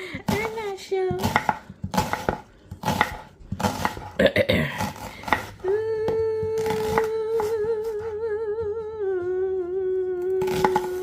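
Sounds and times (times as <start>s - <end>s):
woman humming: 5.5s - 11.0s.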